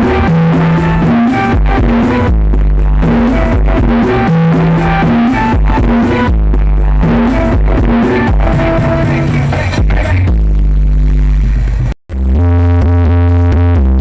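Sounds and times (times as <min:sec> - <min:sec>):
loud music with booming bass: 0:00.0 - 0:14.0.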